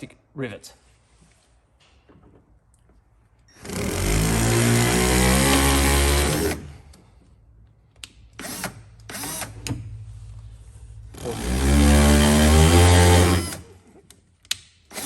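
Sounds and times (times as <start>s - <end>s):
power drill whirring: 3.5s - 6.8s, 8.4s - 9.7s, 11.2s - 13.8s.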